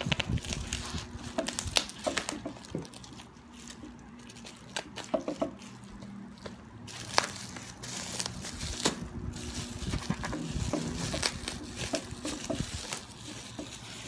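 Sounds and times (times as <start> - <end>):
clicks taps and crinkles: 0.0 - 14.0
parcel being unpacked: 0.0 - 14.0
steady low hum: 0.0 - 14.0.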